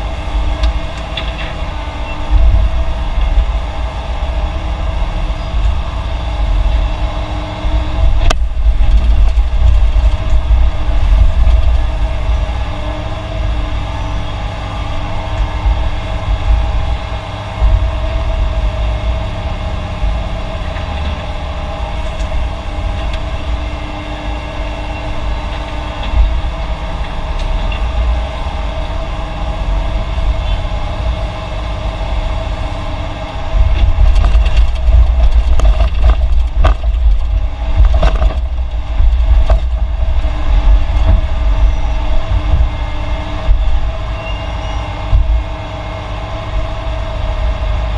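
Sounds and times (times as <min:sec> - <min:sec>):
diesel construction machinery: 0:00.0 - 0:47.9
sharp knocks and clatter: 0:33.6 - 0:42.7.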